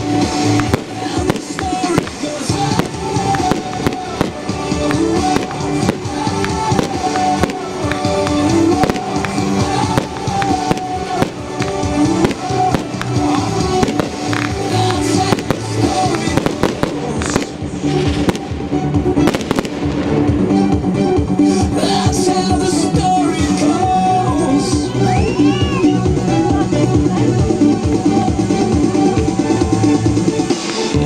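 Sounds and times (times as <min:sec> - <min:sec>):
fireworks bursting and crackling: 0:00.0 - 0:20.6, 0:28.6 - 0:31.0
music playing: 0:00.0 - 0:31.0.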